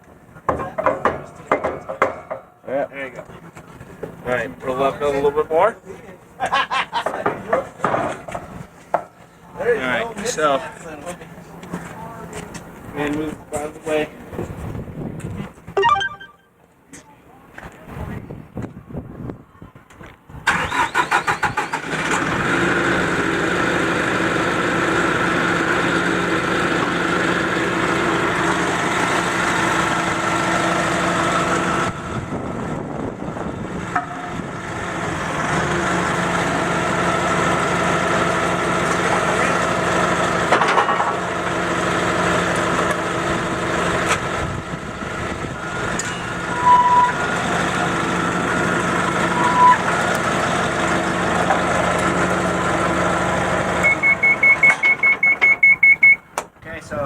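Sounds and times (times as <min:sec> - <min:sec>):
short beep: 0:15.8 - 0:16.5, 0:53.8 - 0:56.3
forklift engine starting and running: 0:20.3 - 0:56.5.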